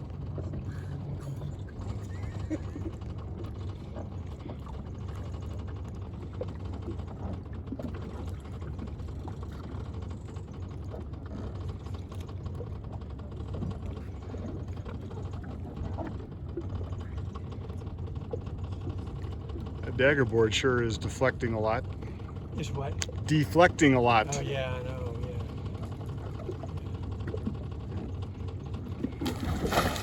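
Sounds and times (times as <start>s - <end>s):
hull and rigging creaking: 0.0s - 30.0s
wind: 0.0s - 30.0s
rush of water: 29.0s - 30.0s.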